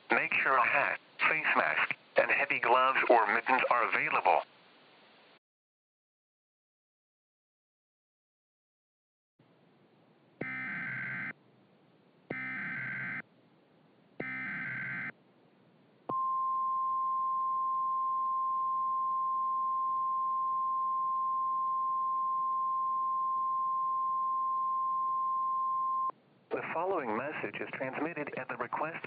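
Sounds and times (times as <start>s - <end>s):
single-pitch alarm tone: 16.1s - 26.1s.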